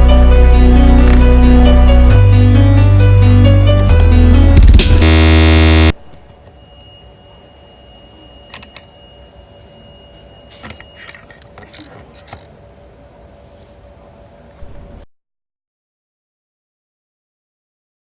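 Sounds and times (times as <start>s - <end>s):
loud electronic buzz: 4.0s - 6.0s.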